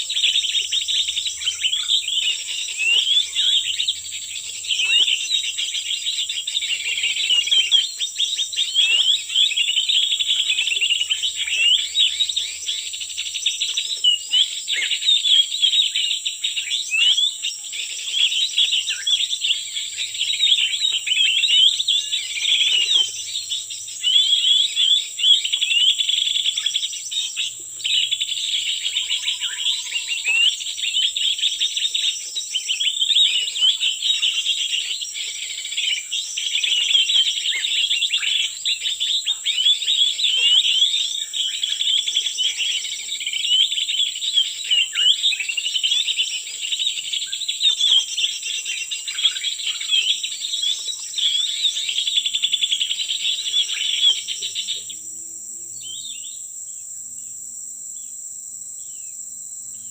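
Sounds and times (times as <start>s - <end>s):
small birds chirping: 0.0s - 59.9s
high-pitched insect buzz: 15.8s - 59.9s.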